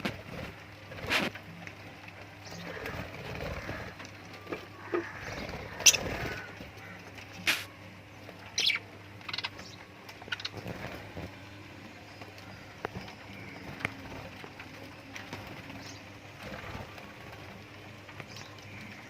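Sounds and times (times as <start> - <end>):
birds giving sharp high chirps: 4.8 - 7.8, 8.5 - 11.4.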